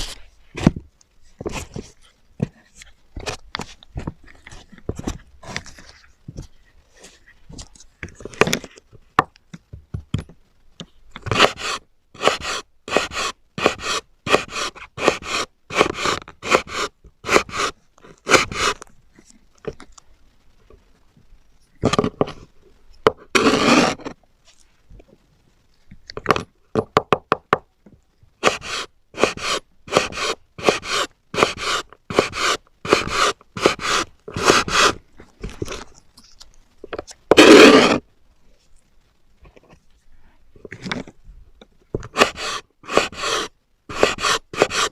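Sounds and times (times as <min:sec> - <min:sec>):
knife scraping: 0:23.4 - 0:24.2, 0:28.4 - 0:36.0, 0:37.3 - 0:38.0, 0:42.0 - 0:44.9.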